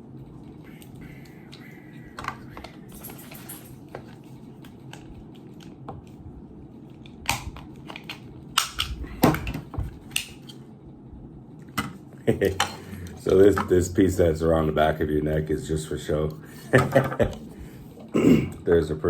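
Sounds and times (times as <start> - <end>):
hard plastic clicking and snapping: 7.3 - 10.4.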